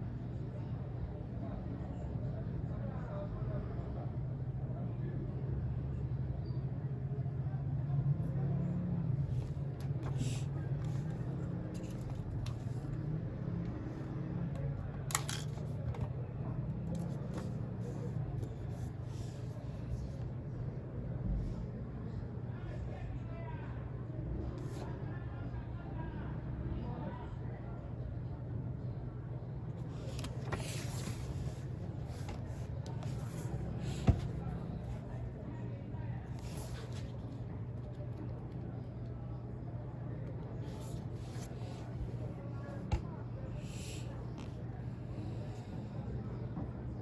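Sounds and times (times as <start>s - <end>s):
low background hum: 0.0s - 47.0s
soft clicks and rustles: 9.3s - 13.0s.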